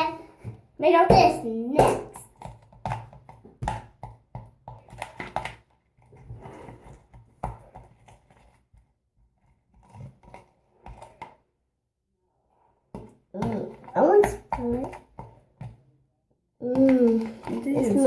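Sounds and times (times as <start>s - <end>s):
utensil tapping mixing bowl: 0.4s - 5.5s
scraping in bowl: 6.1s - 8.7s, 17.1s - 18.0s.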